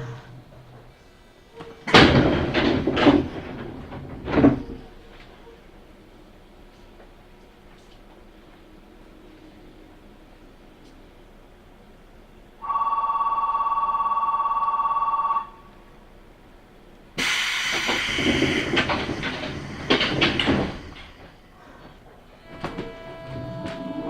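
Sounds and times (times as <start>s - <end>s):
train doors hissing and clattering: 0.0s - 5.8s, 17.2s - 24.0s.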